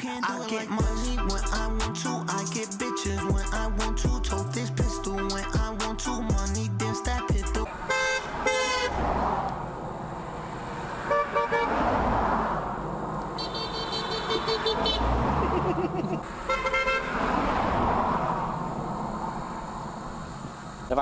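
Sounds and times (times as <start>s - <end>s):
cars passing: 1.2s - 21.0s
car horns honking: 7.0s - 9.1s, 11.0s - 11.8s, 13.4s - 15.6s, 16.3s - 17.3s.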